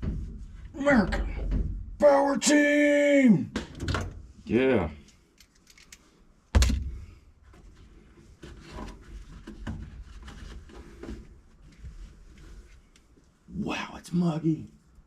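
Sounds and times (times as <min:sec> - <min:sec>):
heavy thump: 0:06.6 - 0:07.2
knocks and clatter of parts: 0:06.6 - 0:07.6.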